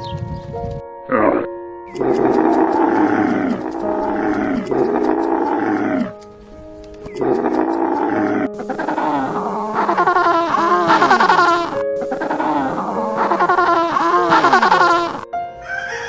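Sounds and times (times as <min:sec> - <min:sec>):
background music: 0:00.0 - 0:16.0
higher-pitched animal sound: 0:01.1 - 0:06.1, 0:07.1 - 0:16.0
animal calling falling in pitch: 0:07.2 - 0:16.0.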